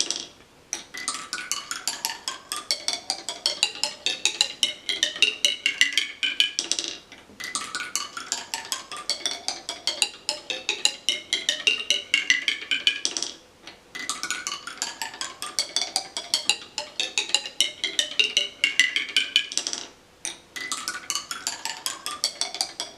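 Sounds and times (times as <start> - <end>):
marbles clicking on musical tower: 0.0 - 22.9.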